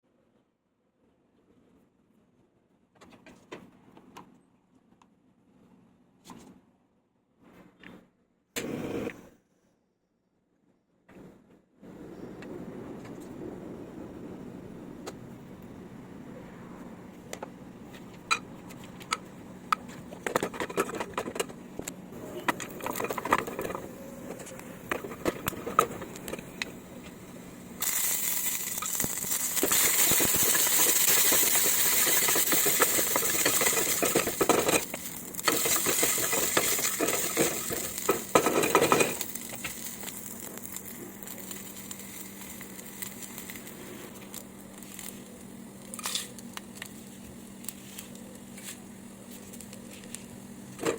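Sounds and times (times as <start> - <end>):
food sizzling in hot oil: 27.2 - 45.2
utensils knocking against a pan: 29.6 - 39.2.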